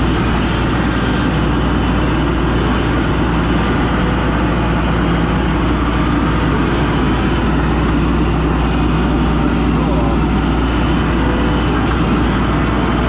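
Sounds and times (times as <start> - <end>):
skid steer engine running: 0.0 - 13.0.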